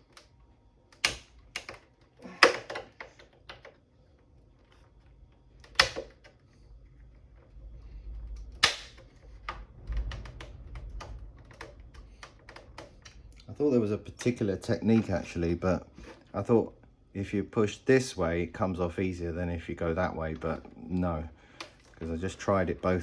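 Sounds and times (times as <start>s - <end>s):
plastic clicks and snaps: 0.9s - 3.8s, 5.6s - 6.4s, 8.3s - 9.6s
low rumble of case handling: 4.4s - 16.3s.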